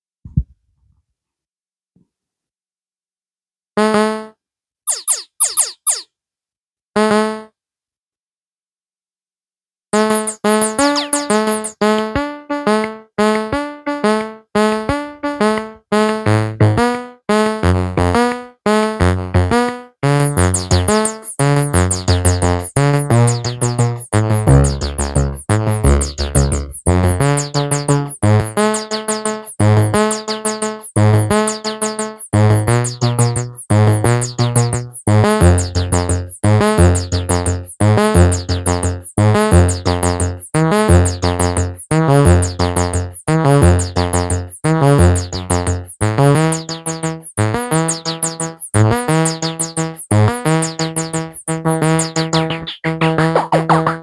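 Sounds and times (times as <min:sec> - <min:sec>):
synth bass line: 0:10.0 - 0:12.2, 0:19.1 - 0:54.0
plucked synthesizer notes: 0:10.0 - 0:54.0.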